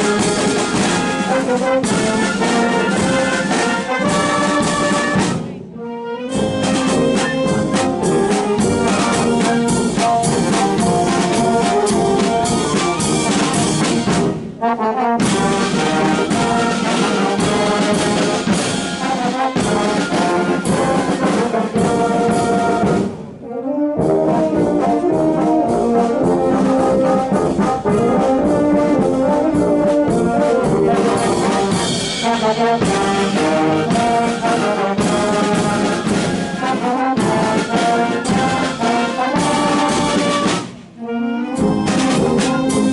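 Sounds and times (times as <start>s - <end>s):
brass band playing: 0.0s - 42.9s.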